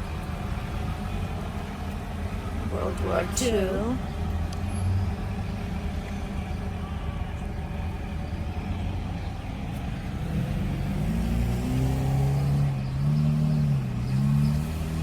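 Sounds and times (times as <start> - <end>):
vehicle accelerating on road: 3.9 - 15.0.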